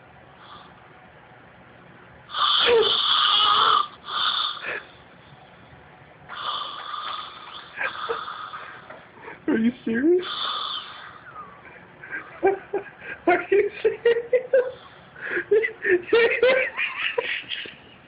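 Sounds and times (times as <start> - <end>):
woman snoring loudly: 2.3 - 4.8, 6.3 - 8.6, 10.2 - 11.2.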